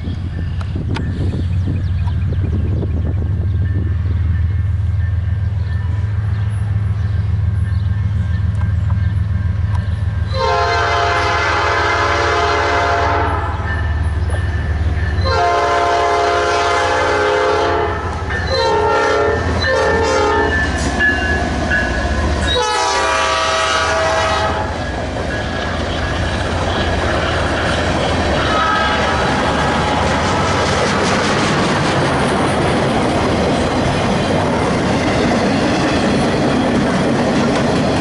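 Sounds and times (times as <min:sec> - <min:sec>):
locomotive engine rumbling: 0:00.0 - 0:38.0
locomotive air horn blasts: 0:10.3 - 0:13.7, 0:15.2 - 0:21.1, 0:22.5 - 0:24.8, 0:28.4 - 0:29.8.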